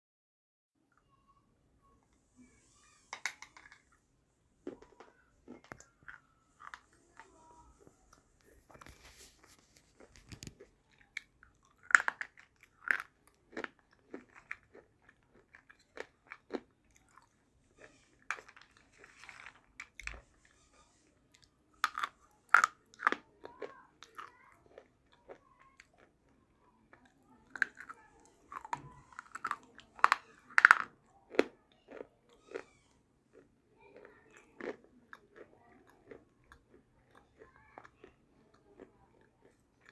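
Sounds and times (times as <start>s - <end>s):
grinding chews: 7.8s - 20.4s, 21.3s - 39.9s
slate pencils crunching: 8.4s - 17.2s, 17.8s - 20.3s, 27.5s - 32.0s.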